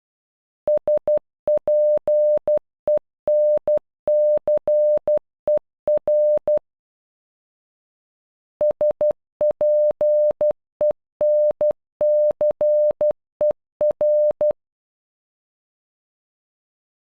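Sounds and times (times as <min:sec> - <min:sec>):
morse code beeps: 0:00.7 - 0:06.6, 0:08.6 - 0:14.6.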